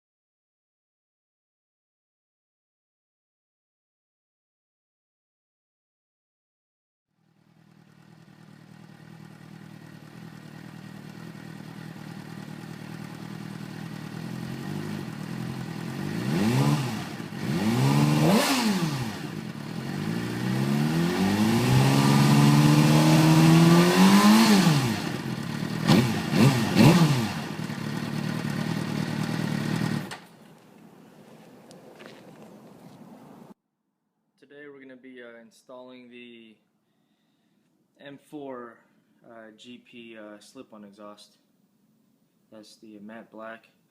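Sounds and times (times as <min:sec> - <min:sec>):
motorcycle engine idling and revving: 0:07.2 - 0:33.6.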